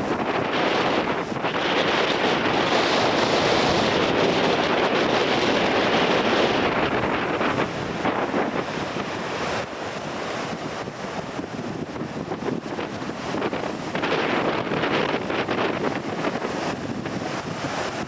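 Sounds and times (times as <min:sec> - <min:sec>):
surf crashing on rocks: 0:00.0 - 0:18.0
wind buffeting microphone: 0:00.0 - 0:18.0.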